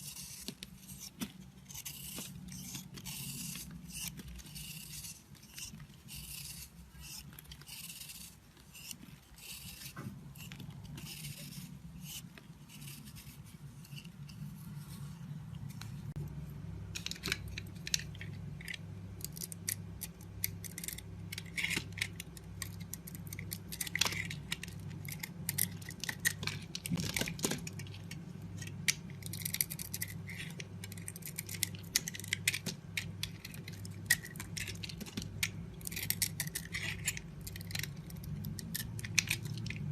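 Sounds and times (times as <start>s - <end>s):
blade scraping soap: 0.0s - 15.8s, 17.2s - 39.9s
soap clicking and cracking: 16.9s - 39.9s.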